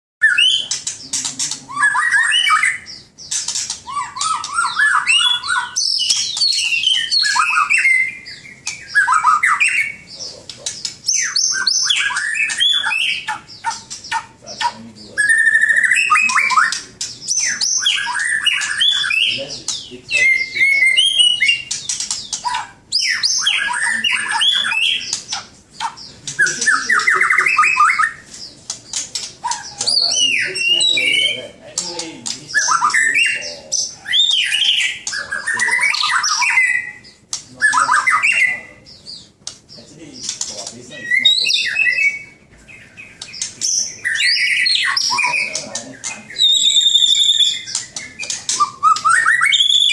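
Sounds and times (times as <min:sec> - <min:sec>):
bird singing whistles and trills: 0:00.2 - 0:31.6, 0:32.2 - 0:49.9.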